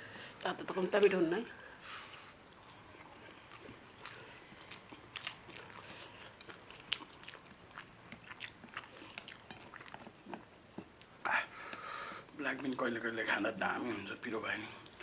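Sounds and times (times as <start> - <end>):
chewing with crunches: 1.8 - 15.0.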